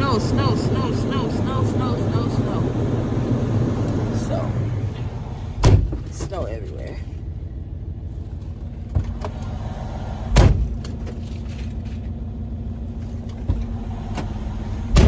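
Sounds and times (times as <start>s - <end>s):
diesel truck engine idling: 0.0s - 15.0s
steady hum: 0.0s - 15.0s
knocks in truck cab: 5.6s - 6.2s.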